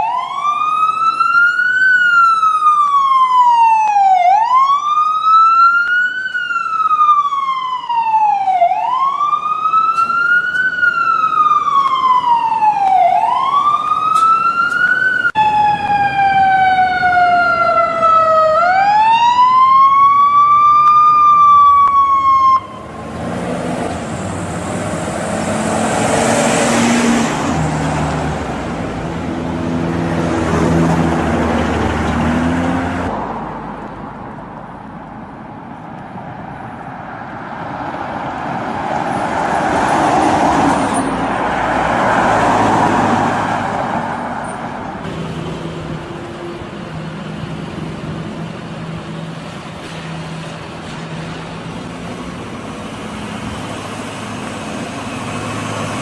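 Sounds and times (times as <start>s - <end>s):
ambulance siren wailing: 0.0s - 23.0s
road traffic noise: 0.0s - 56.0s.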